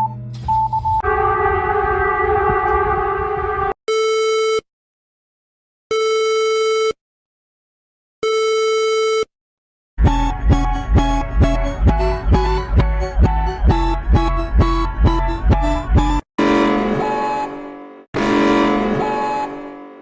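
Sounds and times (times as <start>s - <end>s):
music: 10.0s - 20.0s
harsh multi-tone alert: 16.4s - 20.0s.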